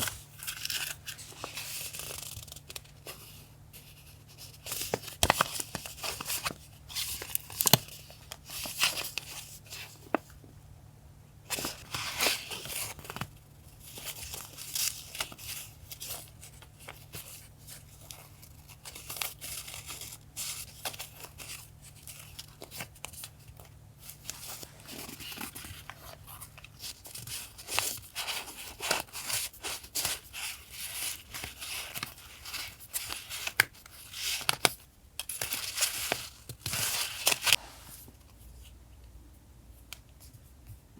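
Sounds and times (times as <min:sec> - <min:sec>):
paper rustling and tearing: 0:00.0 - 0:09.9, 0:24.0 - 0:38.0.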